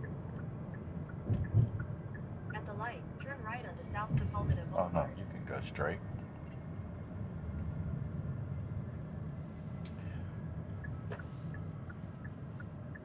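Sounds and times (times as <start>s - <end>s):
light regular ticking: 0.0s - 2.7s, 10.6s - 13.0s
road and tyre rumble in car: 0.0s - 13.0s.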